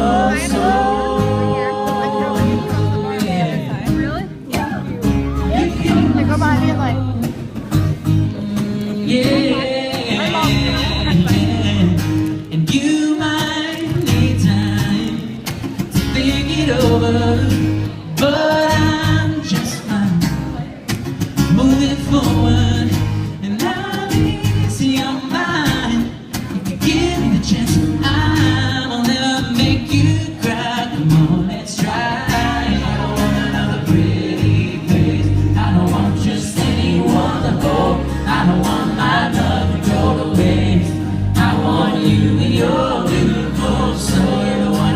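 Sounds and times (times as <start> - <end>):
man singing: 0.0 - 3.9, 4.8 - 20.7, 21.4 - 44.9
bass line: 0.0 - 12.8, 26.8 - 44.9
guitar: 0.0 - 44.9.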